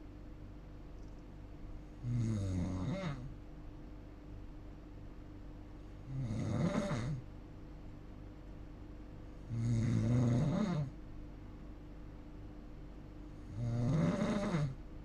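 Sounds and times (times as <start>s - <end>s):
person snoring: 2.0s - 3.3s, 6.1s - 7.2s, 9.5s - 10.9s, 13.4s - 14.8s.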